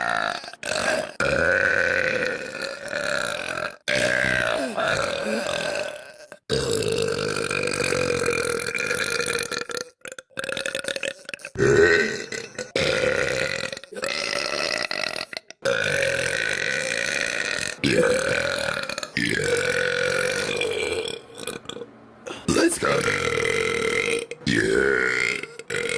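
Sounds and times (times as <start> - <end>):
girl burping: 0.0 - 21.7.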